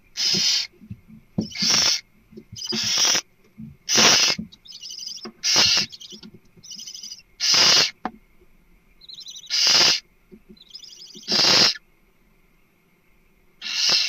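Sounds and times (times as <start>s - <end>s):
barn owl screeching: 0.2s - 0.7s, 1.4s - 2.0s, 2.6s - 3.2s, 3.9s - 8.0s, 9.0s - 10.0s, 10.6s - 11.8s, 13.6s - 14.0s
rapid high chittering: 1.4s - 2.0s, 2.6s - 3.2s, 3.9s - 8.0s, 9.0s - 10.0s, 10.6s - 11.8s, 13.6s - 14.0s.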